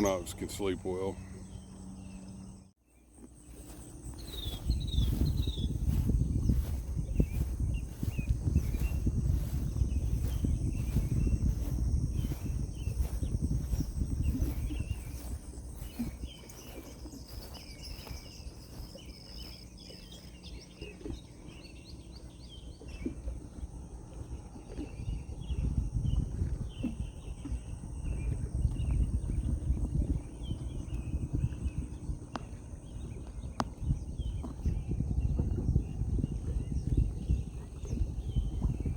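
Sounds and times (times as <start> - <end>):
small birds chirping: 0.0 - 23.7, 24.5 - 38.9
wind rumble on microphone: 3.4 - 38.9
high-pitched insect drone: 3.5 - 20.2.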